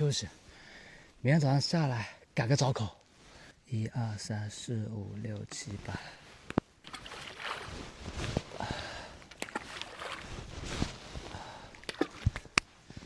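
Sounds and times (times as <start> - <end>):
water splashing: 6.8 - 12.6.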